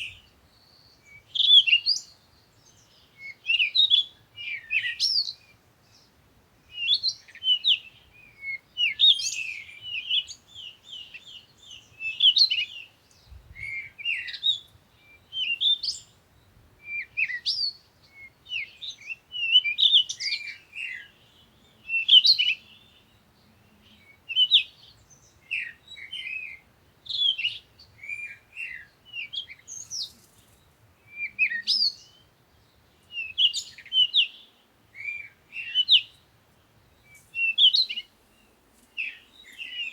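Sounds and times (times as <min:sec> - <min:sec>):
birds chirping: 0:00.0 - 0:39.9.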